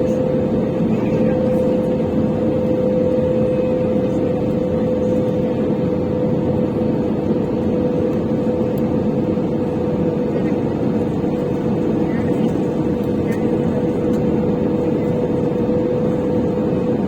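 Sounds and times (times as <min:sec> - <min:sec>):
aircraft engine and airflow roar: 0:00.0 - 0:17.0
constant hum: 0:00.0 - 0:17.0.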